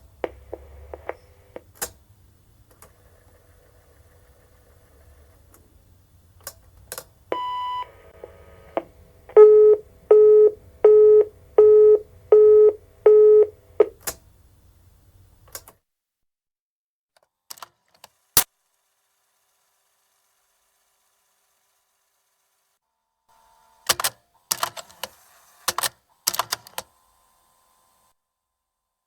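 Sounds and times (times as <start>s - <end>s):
answering machine beeps: 7.3s - 8.0s, 8.7s - 14.0s.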